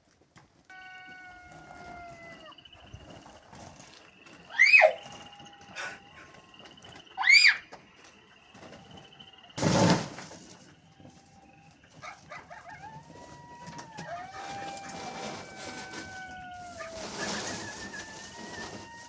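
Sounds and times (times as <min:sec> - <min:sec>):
animals howling: 0:00.7 - 0:09.6, 0:10.4 - 0:19.0.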